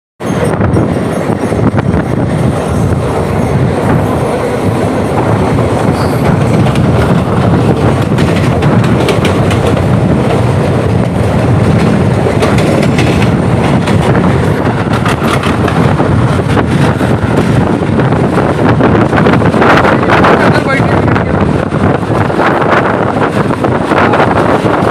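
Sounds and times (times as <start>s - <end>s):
train rumbling on rails: 0.2s - 24.9s
wheels clicking over rail joints: 6.2s - 17.6s.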